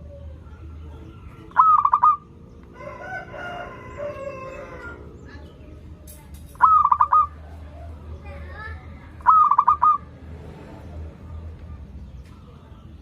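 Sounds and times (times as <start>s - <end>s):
dove cooing trilled notes: 0.0s - 5.5s, 6.5s - 7.9s, 9.2s - 10.2s
distant rooster crowing: 2.0s - 5.4s.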